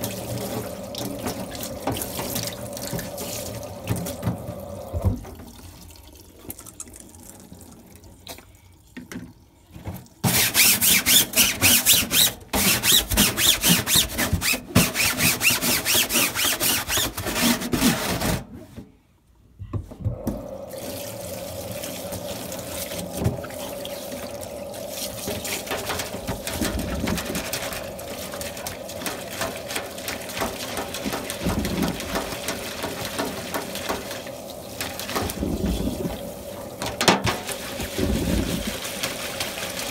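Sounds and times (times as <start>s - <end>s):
tap water spattering on filter: 25.1s - 36.2s.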